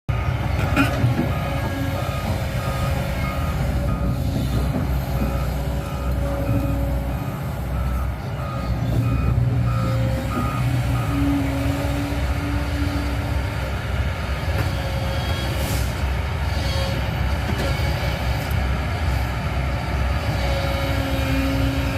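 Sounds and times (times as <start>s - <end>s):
excavator warning alarm beeping: 0.1s - 12.5s
diesel engine running: 0.1s - 21.9s.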